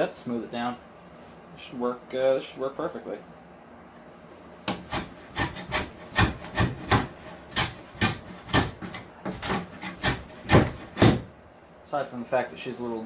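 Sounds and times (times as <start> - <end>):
wood plane shaving boards: 4.7 - 11.2.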